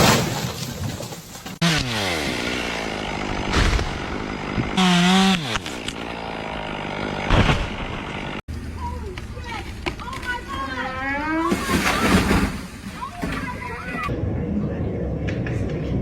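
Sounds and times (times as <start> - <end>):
chainsaw engine revving: 1.6 - 8.4
loud crash or thump: 3.4 - 4.0, 7.3 - 7.8.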